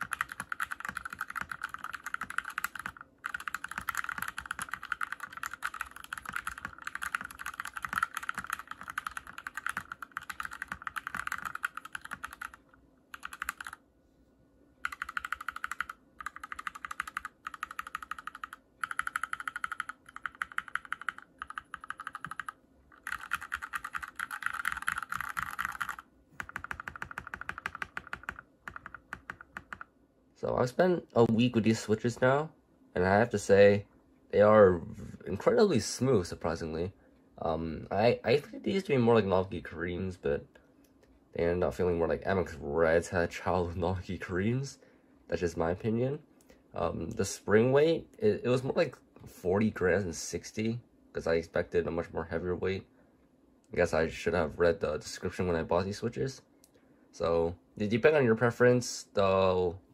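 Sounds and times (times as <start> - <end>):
typing on a mechanical keyboard: 0.0 - 13.8, 14.8 - 29.9.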